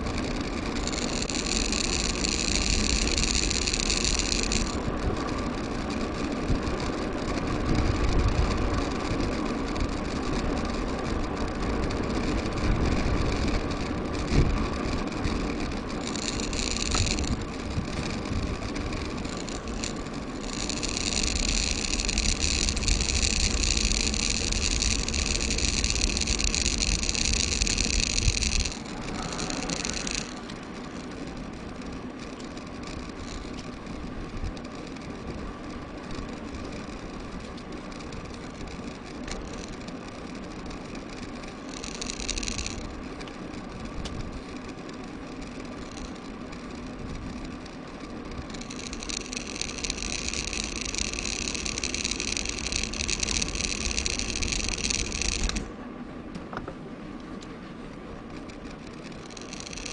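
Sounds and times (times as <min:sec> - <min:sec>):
wind rumble: 0:00.0 - 0:55.7
bike tyre and road noise: 0:00.0 - 0:59.9
high buzz: 0:13.6 - 0:33.7.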